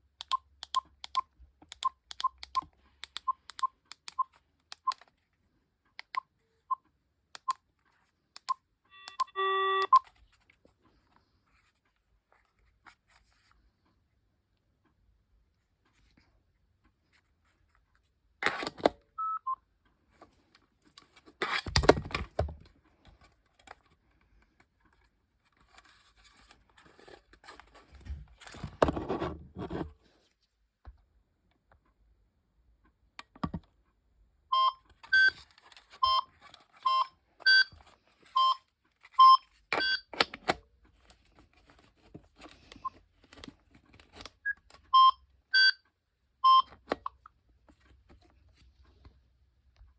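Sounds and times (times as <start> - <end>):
electronic key beeps: 8.4 - 10.1, 34.5 - 35.3, 36.0 - 36.2, 36.9 - 37.7, 38.4 - 38.6, 39.2 - 40.1, 44.5 - 45.8, 46.4 - 47.2.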